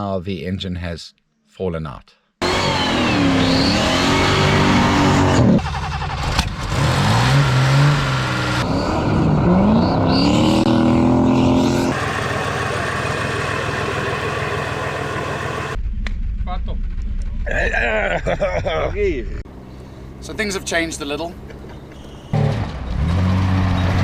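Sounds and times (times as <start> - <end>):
old car engines revving: 2.4 - 15.8, 19.5 - 24.0.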